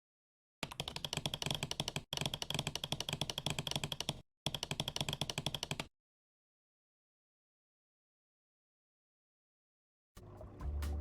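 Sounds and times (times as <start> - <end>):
rapid typing on keys: 0.6 - 5.9.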